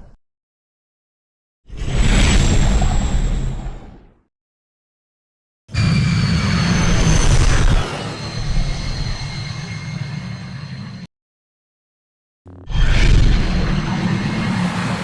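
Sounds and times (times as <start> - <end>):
spaceship flyby rumble and whine: 5.7 - 11.1, 12.5 - 15.0.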